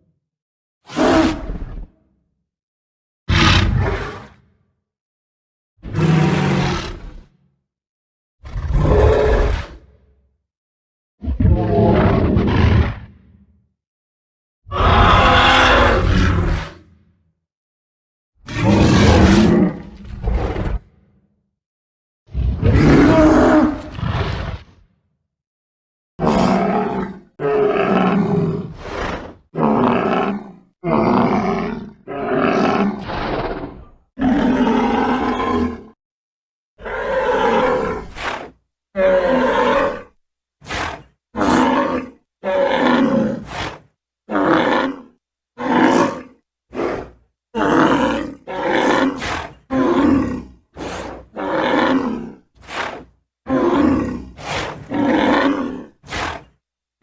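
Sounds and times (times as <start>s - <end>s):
dinosaur roars: 0.9s - 1.9s, 5.8s - 7.3s, 8.4s - 9.8s, 11.2s - 13.1s, 14.7s - 16.9s, 18.4s - 20.9s, 22.3s - 24.8s, 26.2s - 36.0s, 36.8s - 56.6s.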